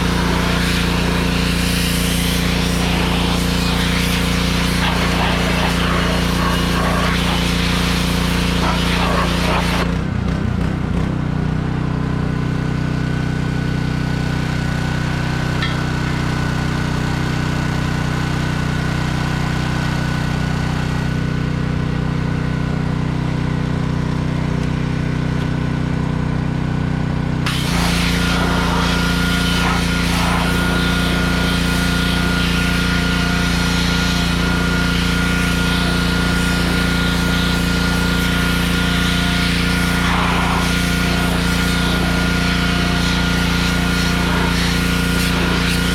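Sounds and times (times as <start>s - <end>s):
water spray hiss: 0.0s - 9.9s
pressure washer engine running: 0.0s - 45.9s.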